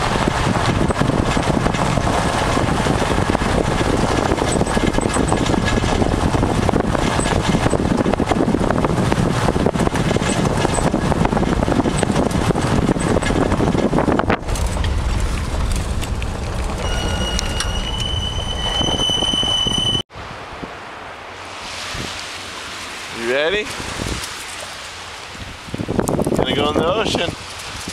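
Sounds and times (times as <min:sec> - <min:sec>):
low rumble: 0:00.0 - 0:20.7
vehicle road and wind noise: 0:00.0 - 0:27.9
steady high whine: 0:14.2 - 0:20.1.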